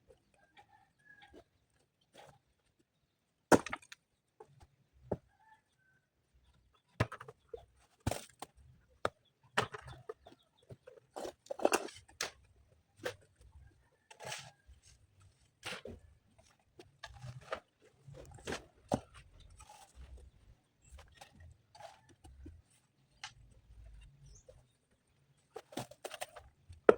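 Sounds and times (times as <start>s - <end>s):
stones knocking and clacking: 3.5s - 5.2s.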